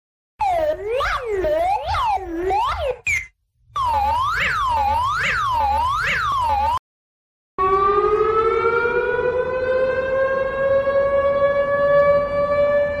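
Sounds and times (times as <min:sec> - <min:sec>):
civil defence siren rising tone: 0:03.8 - 0:06.8, 0:07.6 - 0:13.0.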